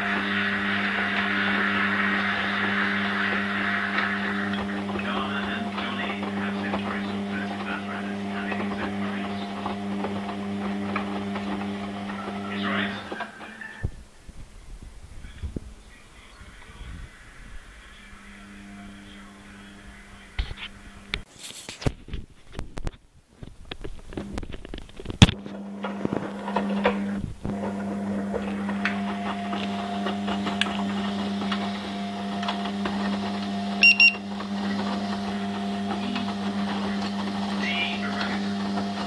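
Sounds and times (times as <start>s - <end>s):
washing machine motor hum: 0.0s - 14.3s, 15.0s - 21.3s, 23.6s - 39.0s
short electronic beeps: 33.8s - 34.2s.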